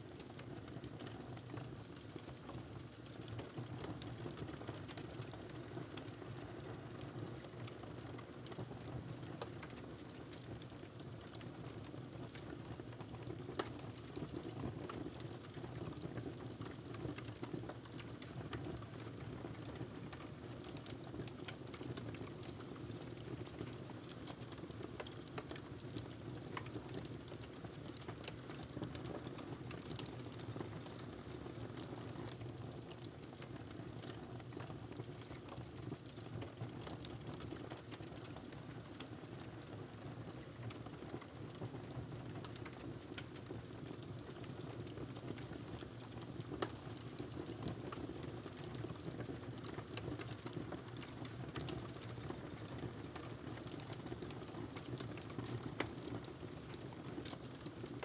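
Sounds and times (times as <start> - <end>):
wood fire crackling: 42.2 - 58.0.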